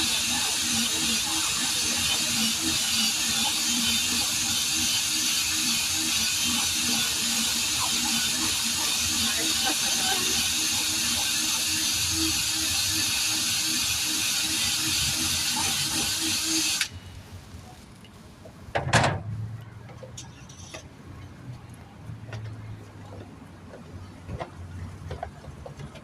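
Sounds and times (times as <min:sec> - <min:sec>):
air tool hissing and humming: 0:00.0 - 0:17.2.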